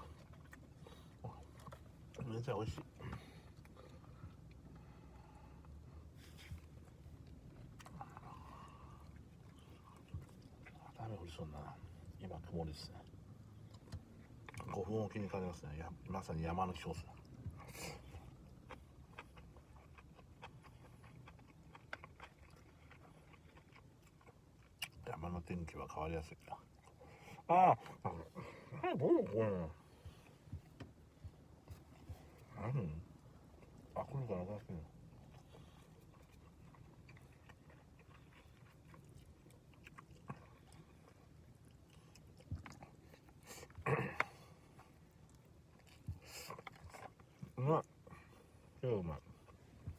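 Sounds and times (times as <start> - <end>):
person chewing food: 0.0 - 11.0, 13.0 - 14.9, 16.7 - 49.9
low steady hum: 0.0 - 49.9
chewing and eating clicks: 18.3 - 27.0.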